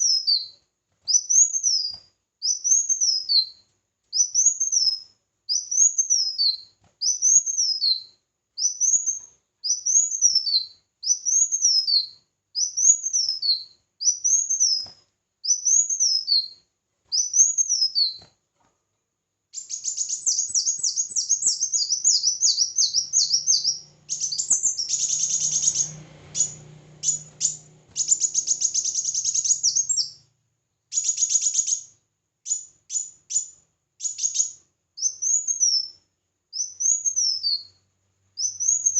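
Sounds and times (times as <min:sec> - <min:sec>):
songbird singing: 0:00.0 - 0:03.6, 0:04.2 - 0:18.3, 0:19.5 - 0:38.9
fast high bird trills: 0:19.6 - 0:30.2.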